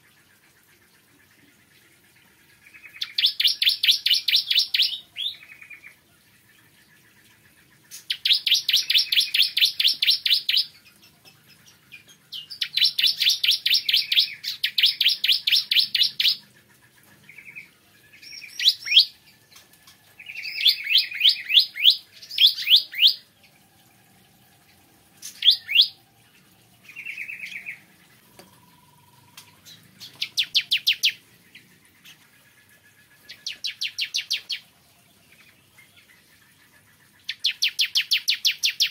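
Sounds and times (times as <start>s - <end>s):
bird singing rapid high notes: 25.2s - 26.0s.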